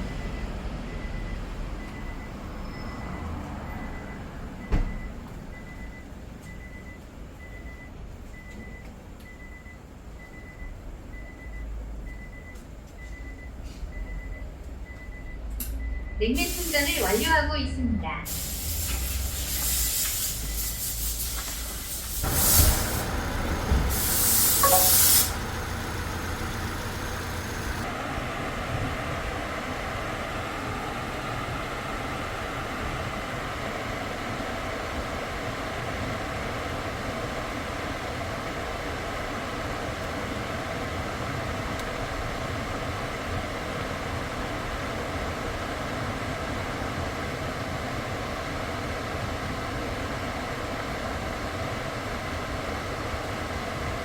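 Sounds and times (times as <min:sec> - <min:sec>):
car engine rumble: 0:00.0 - 0:16.2, 0:18.3 - 0:54.0
refrigerant gas hissing: 0:16.3 - 0:17.4, 0:18.3 - 0:27.9
electronic beeper beeping: 0:24.4 - 0:25.4.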